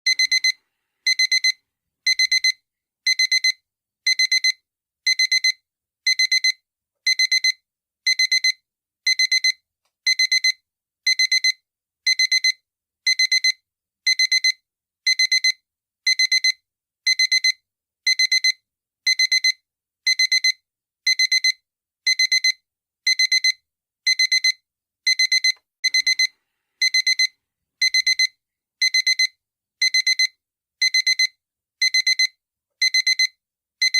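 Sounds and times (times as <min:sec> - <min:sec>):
digital alarm clock beeping: 0:00.1 - 0:33.9.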